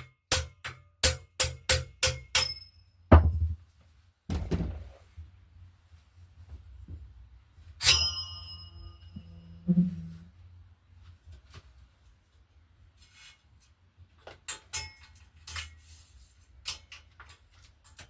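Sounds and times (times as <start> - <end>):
heavy thunks: 3.1 - 3.6, 4.3 - 5.0
ringing metal strike: 7.8 - 9.7.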